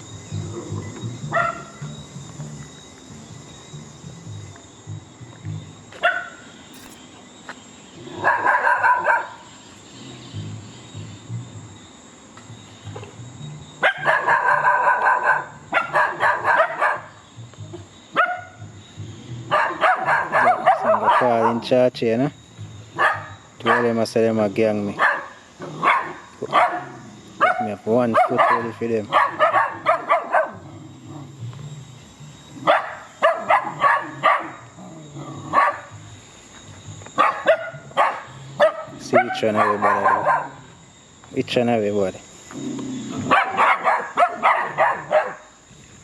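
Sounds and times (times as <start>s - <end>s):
dogs barking: 1.2s - 1.9s, 6.0s - 7.0s, 8.1s - 9.5s, 13.8s - 17.2s, 18.1s - 18.7s, 19.4s - 21.8s, 22.9s - 24.0s, 24.9s - 30.9s, 32.6s - 36.0s, 37.1s - 40.8s, 43.0s - 45.6s.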